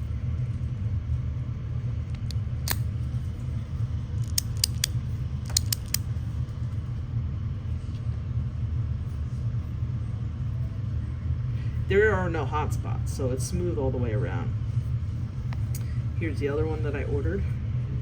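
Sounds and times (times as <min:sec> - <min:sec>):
low hum: 0:00.0 - 0:18.0
fidget coin clicking: 0:04.2 - 0:04.9, 0:05.5 - 0:06.0.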